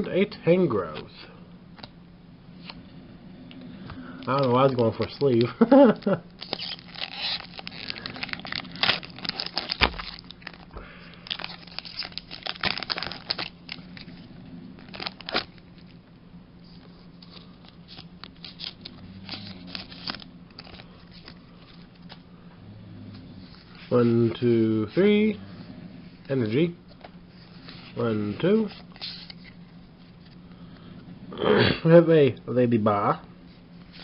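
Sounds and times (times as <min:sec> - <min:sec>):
foil wrapper tearing and crinkling: 0:04.2 - 0:14.2, 0:14.8 - 0:15.8, 0:17.8 - 0:21.4.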